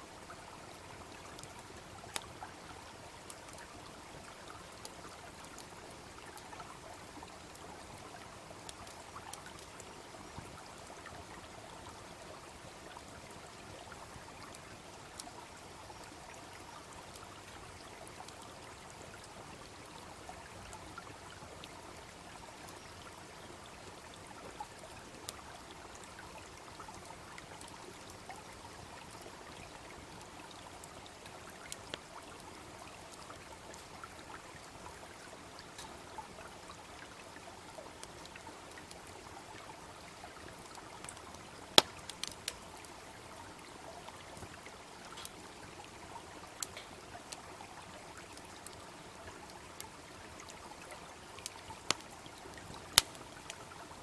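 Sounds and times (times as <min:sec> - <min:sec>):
brook babbling: 0:00.0 - 0:54.0
campfire pops: 0:41.7 - 0:42.6, 0:46.6 - 0:47.0, 0:51.9 - 0:52.1, 0:52.9 - 0:53.5.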